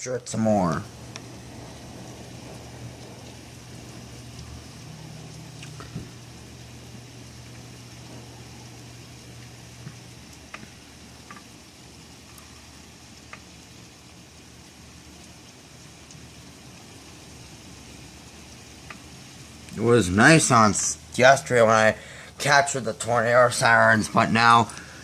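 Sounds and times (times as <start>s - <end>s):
rain hissing: 0.0s - 25.0s
sharp drips ticking: 0.0s - 25.0s
low hum: 0.8s - 25.0s.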